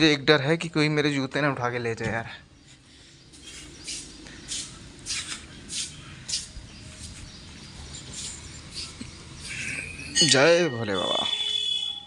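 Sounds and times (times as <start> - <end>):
barefoot footsteps scuffing: 3.3 - 8.4.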